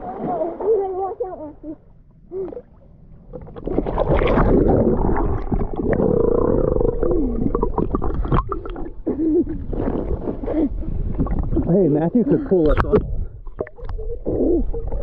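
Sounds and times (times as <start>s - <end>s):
water gurgling and sloshing: 0.0s - 15.0s.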